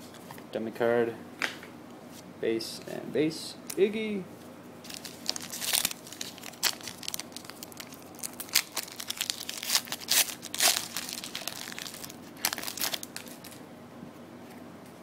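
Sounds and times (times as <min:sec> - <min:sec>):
wrapper crinkling and tearing: 0:04.8 - 0:13.6.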